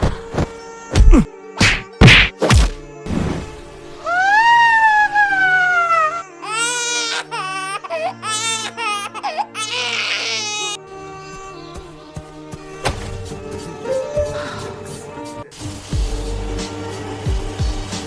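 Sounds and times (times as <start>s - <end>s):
soft background music: 0.0s - 18.0s
person crying and sobbing: 4.0s - 11.8s.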